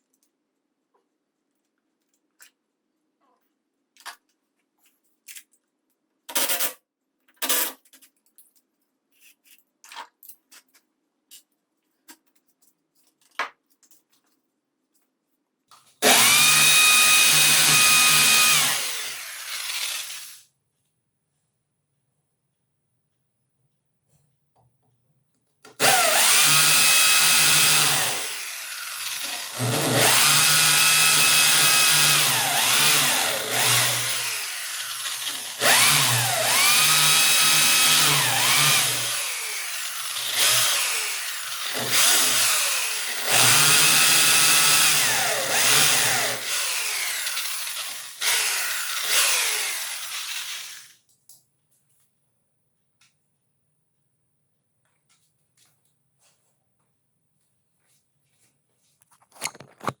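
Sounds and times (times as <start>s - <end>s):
electric drill boring into wall: 16.0s - 20.4s, 25.8s - 51.0s.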